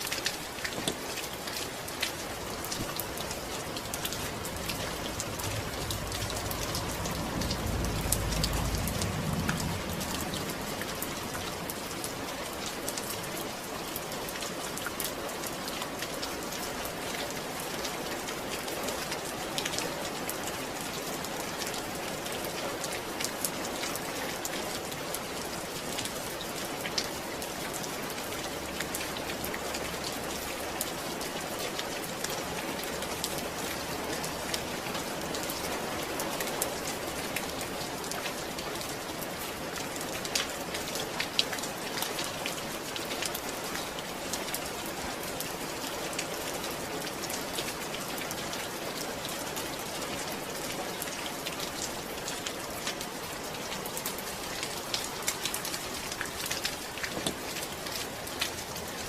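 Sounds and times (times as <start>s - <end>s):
steady rain hiss: 0.0s - 59.0s
low rumble: 3.0s - 12.0s.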